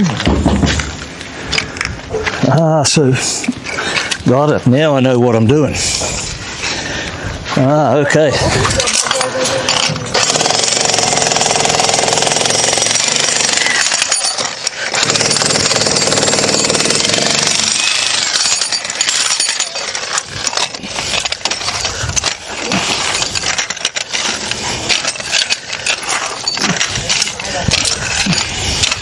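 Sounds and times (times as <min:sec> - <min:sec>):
jackhammer hammering masonry: 0:09.0 - 0:29.0.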